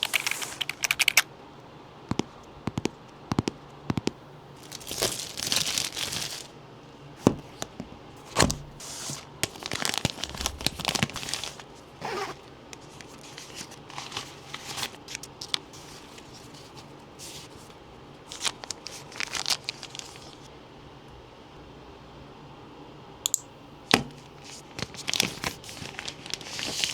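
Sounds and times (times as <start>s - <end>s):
wrapping tearing and crinkling: 4.6s - 6.6s, 7.4s - 20.5s, 23.9s - 26.9s.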